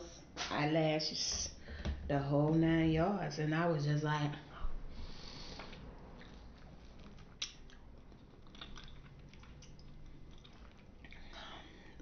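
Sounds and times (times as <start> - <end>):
chewing and mouth clicks: 5.6 - 12.0.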